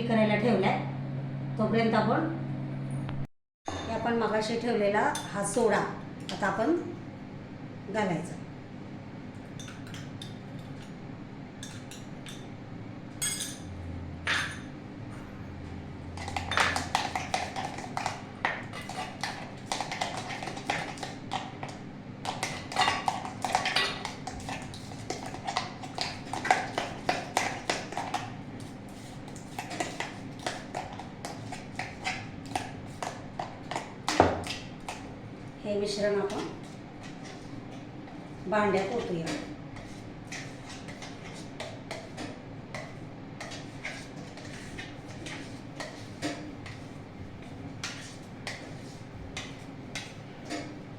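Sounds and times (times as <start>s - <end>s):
utensil beating batter in bowl: 16.1s - 50.9s.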